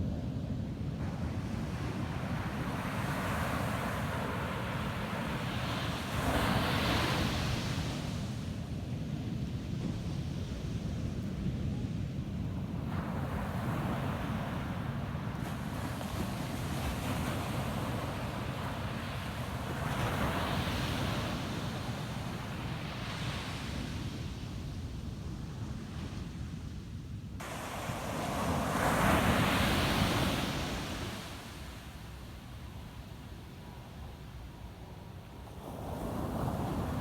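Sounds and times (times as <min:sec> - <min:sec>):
ocean waves breaking: 0:27.4 - 0:34.5.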